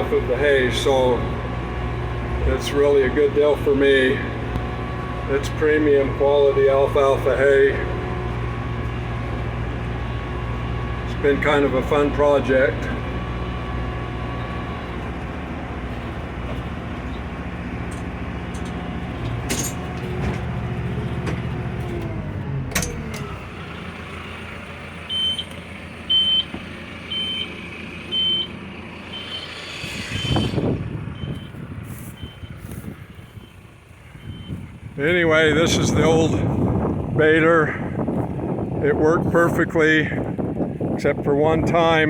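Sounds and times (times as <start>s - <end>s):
tractor engine humming: 0.0s - 42.0s
high electronic beeps: 29.1s - 32.6s.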